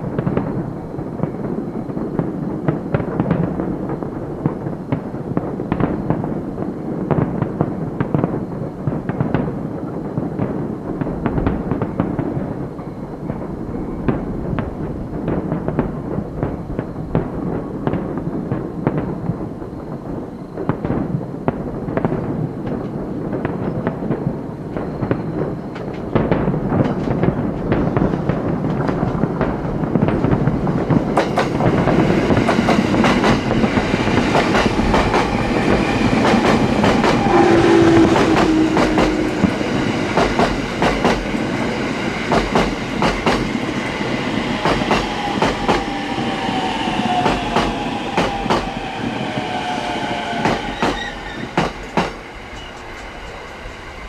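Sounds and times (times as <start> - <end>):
train wheels clattering over rail joints: 26.8 - 27.3, 31.0 - 41.6, 42.3 - 43.6, 50.4 - 53.4
electric train passing: 26.8 - 54.0.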